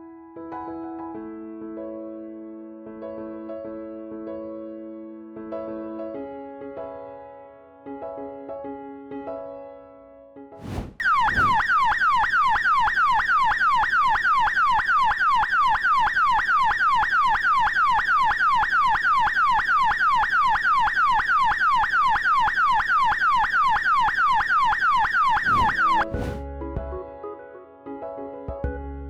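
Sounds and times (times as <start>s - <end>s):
electronic siren falling sweep: 10.6s - 26.4s.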